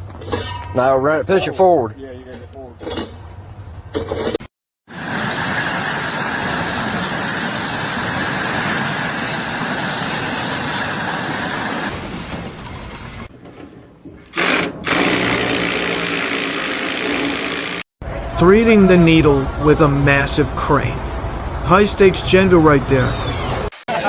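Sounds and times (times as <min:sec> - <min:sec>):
loud machine running: 0:14.4 - 0:18.7.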